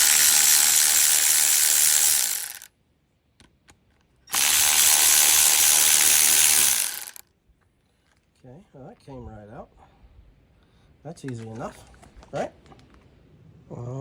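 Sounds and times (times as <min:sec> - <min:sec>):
electric ratchet running: 0:00.0 - 0:02.7, 0:04.3 - 0:07.2.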